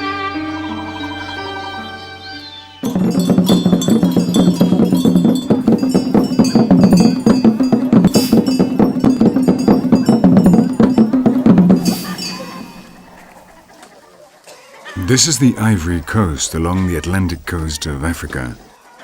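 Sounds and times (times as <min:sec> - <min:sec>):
fast bell and drum percussion: 0:02.8 - 0:13.5.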